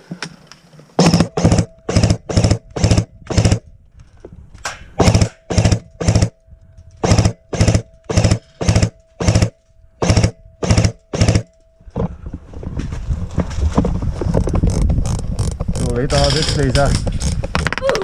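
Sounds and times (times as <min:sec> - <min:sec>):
airsoft gun bursts: 0:07.0 - 0:11.4.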